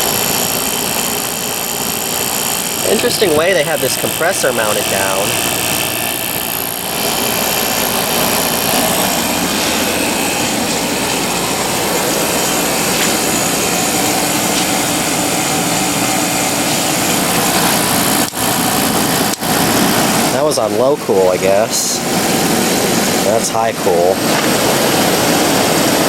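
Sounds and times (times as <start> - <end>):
air conditioner running: 0.0 - 26.0.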